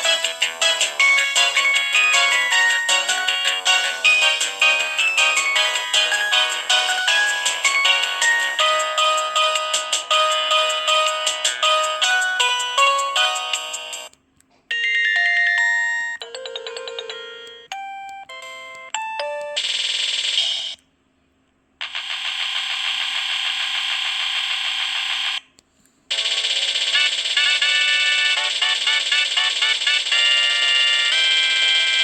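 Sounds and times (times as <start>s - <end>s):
synthesized ringtone melody: 0.0s - 14.1s, 14.7s - 19.8s, 27.0s - 32.0s
buzzy electronic phone ring: 26.1s - 32.0s.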